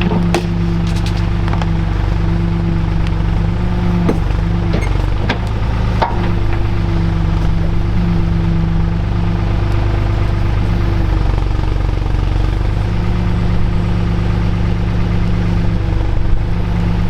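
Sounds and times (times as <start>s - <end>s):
tractor engine running: 0.0s - 17.0s
sharp machine clanks: 0.4s - 1.4s.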